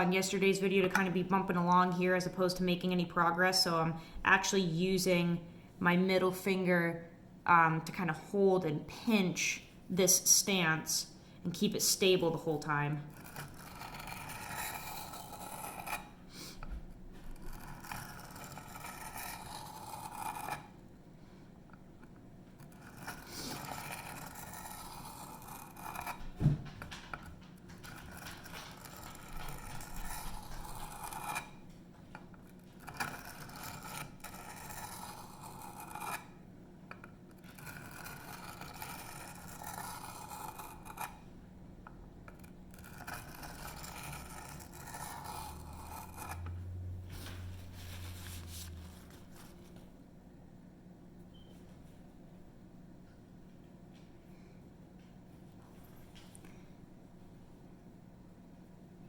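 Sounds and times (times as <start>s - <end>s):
knife scraping on sharpening stone: 13.1s - 16.1s, 17.4s - 20.6s, 32.8s - 36.2s, 42.8s - 46.5s.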